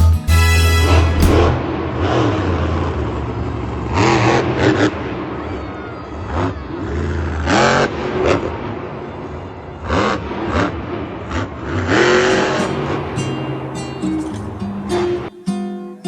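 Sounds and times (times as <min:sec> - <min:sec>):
music: 0:00.0 - 0:01.8, 0:12.6 - 0:16.0
truck engine revving: 0:09.8 - 0:15.3.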